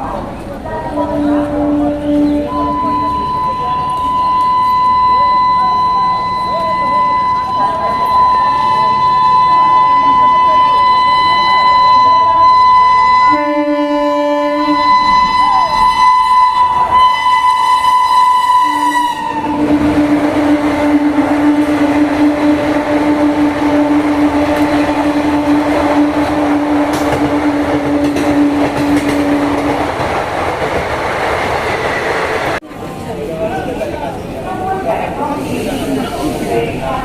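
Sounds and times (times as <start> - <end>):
passing train rush and clatter: 0.0 - 37.0
two-tone locomotive horn: 0.9 - 29.8.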